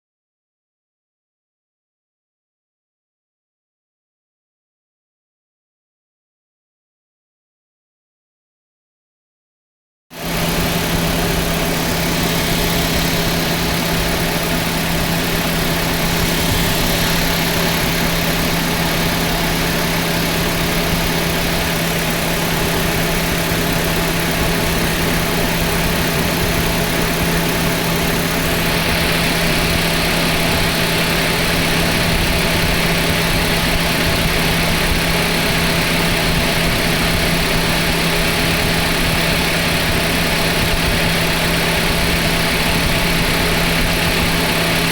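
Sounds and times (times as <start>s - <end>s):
car engine idling: 10.2s - 44.9s.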